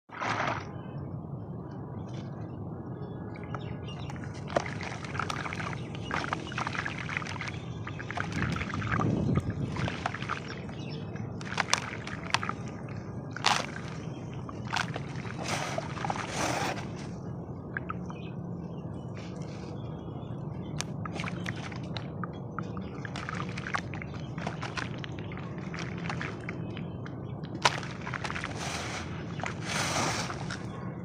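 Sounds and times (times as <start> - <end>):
wet sloshing: 0.1 - 0.8, 3.9 - 18.4, 20.7 - 30.8
crackles and sharp cracks: 13.4 - 14.0.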